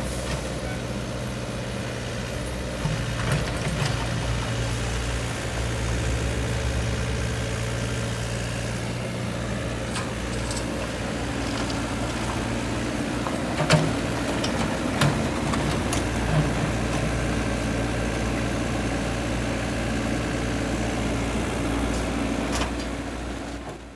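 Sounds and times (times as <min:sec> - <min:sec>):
excavator engine idling: 0:00.0 - 0:23.9.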